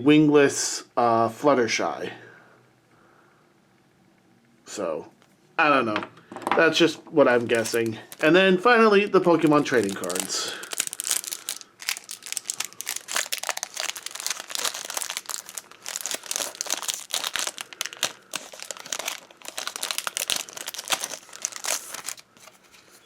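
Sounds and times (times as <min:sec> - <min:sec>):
wrapper crackling and tearing: 0:07.4 - 0:08.4, 0:09.4 - 0:23.0.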